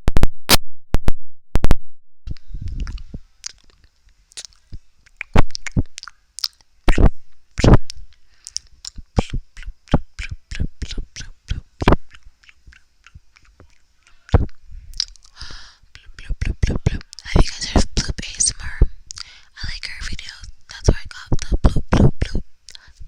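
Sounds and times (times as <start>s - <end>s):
tongue clicks and lip smacks: 2.3s - 18.3s, 19.1s - 19.4s, 21.3s - 23.0s.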